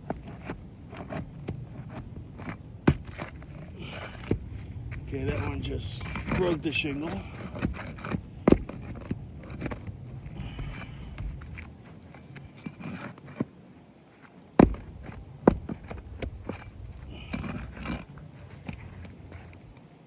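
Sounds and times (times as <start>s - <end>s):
shingles scraping and crackling: 0.0s - 19.8s
sharp knocks: 7.4s - 9.9s, 14.6s - 16.7s.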